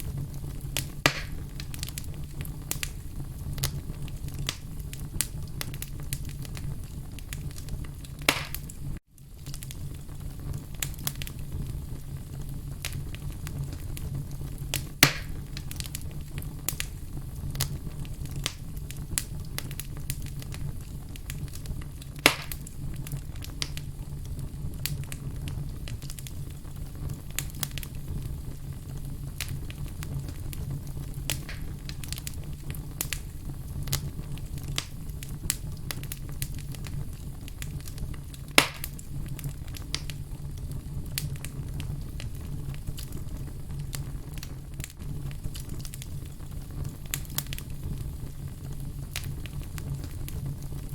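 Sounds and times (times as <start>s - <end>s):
fire crackling: 0.0s - 50.9s
loud pops from fire: 0.0s - 50.9s.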